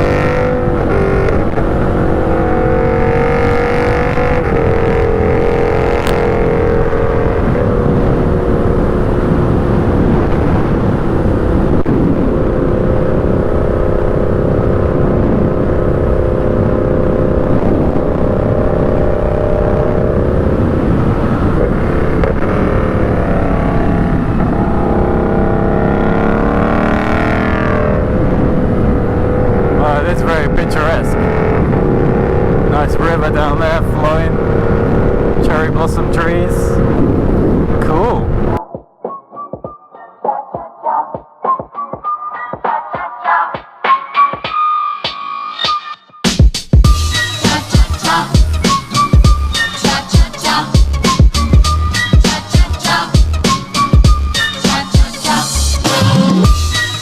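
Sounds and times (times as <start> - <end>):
motorcycle engine cruising: 0.0 - 38.6, 46.8 - 57.0
wind and road rush: 0.0 - 38.6.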